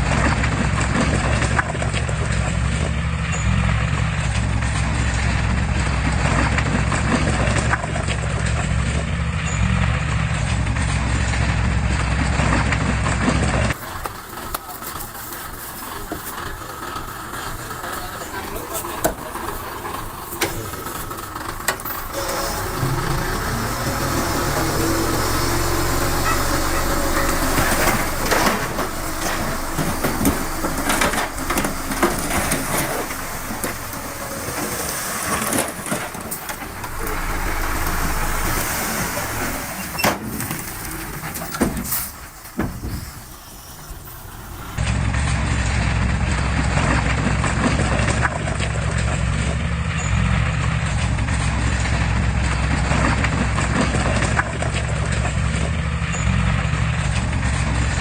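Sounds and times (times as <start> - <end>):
heavy machinery engines running: 0.0 - 58.0
knocks and clatter: 10.4 - 43.0
steady low engine drone: 15.9 - 41.3.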